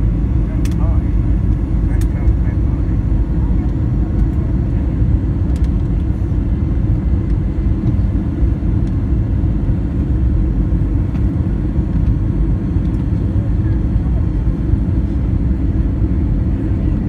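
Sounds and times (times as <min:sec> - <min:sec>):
airplane cabin rumble: 0:00.0 - 0:17.0.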